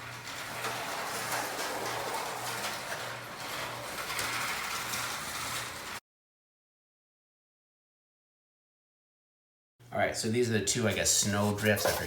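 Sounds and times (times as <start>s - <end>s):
plastic model rattling on track: 0.0s - 6.0s.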